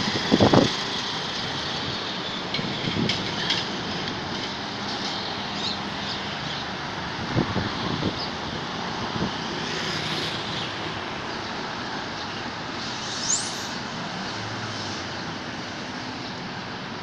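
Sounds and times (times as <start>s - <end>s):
outdoor background noise: 0.0s - 17.0s
rising high-pitched whistle: 13.0s - 13.8s.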